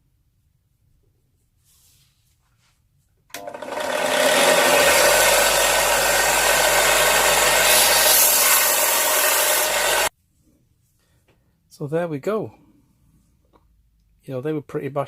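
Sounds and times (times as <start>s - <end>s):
metal grinding on sanding belt: 3.4s - 10.1s.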